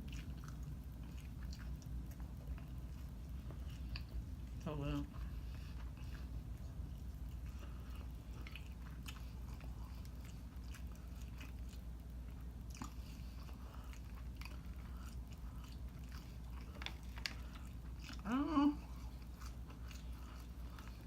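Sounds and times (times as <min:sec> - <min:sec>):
low steady hum: 0:00.0 - 0:21.0
person chewing and biting: 0:05.3 - 0:21.0.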